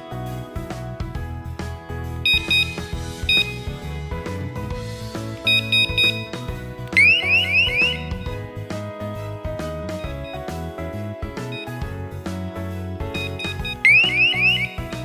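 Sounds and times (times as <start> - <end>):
background music: 0.0 - 15.0
electronic alarm beeps: 2.3 - 3.8, 5.4 - 6.4, 7.0 - 8.4, 11.5 - 11.8, 13.1 - 15.0
quick rising chirps: 13.2 - 14.8.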